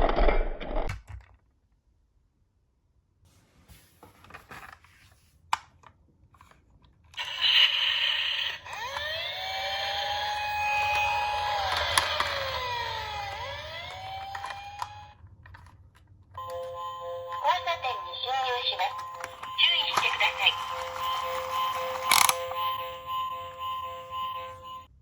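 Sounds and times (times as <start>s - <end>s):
toy police siren wailing: 7.2s - 15.2s, 16.4s - 24.9s.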